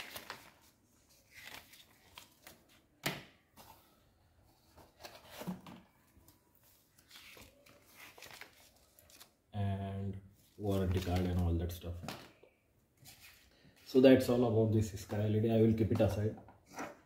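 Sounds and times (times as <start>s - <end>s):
paper and cardboard rustling: 0.0s - 2.8s, 3.5s - 9.4s, 10.3s - 12.4s, 13.0s - 14.0s.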